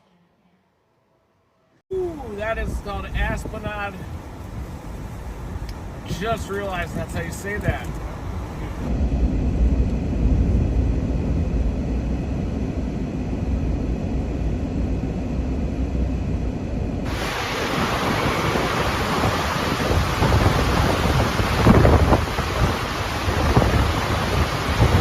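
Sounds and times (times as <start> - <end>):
wind buffeting microphone: 2.0 - 25.0
low rumble: 7.9 - 25.0
heavy rain hissing: 17.1 - 25.0.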